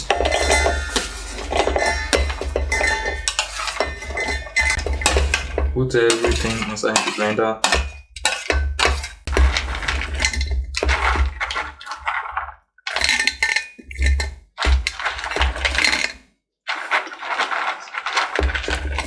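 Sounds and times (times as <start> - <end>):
dishes clinking: 0.0 - 11.0
food pieces clattering into blender: 0.0 - 19.0.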